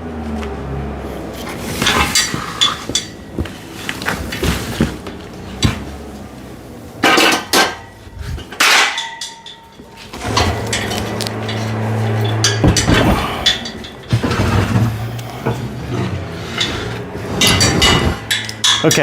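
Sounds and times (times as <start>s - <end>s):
rustling or scraping bursts: 1.1s - 6.4s, 9.9s - 19.0s
metal parts knocking and clinking: 1.5s - 4.5s, 7.0s - 19.0s.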